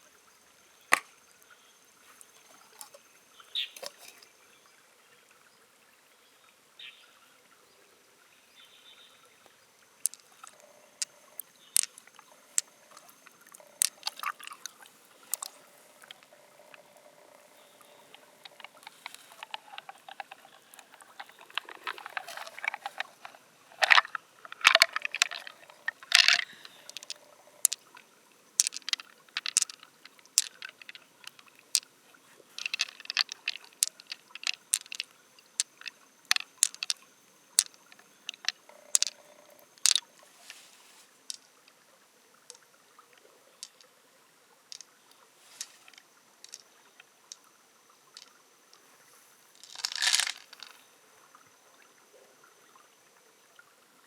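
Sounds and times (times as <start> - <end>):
long shell scraping: 3.7 - 4.3, 10.0 - 41.5, 43.6 - 43.8, 44.7 - 47.5, 48.1 - 50.8
mussel shell clicks and crunches: 10.1 - 28.0, 28.6 - 31.9, 32.6 - 37.0, 37.6 - 39.2, 39.8 - 40.6, 45.5 - 46.7, 49.6 - 50.8.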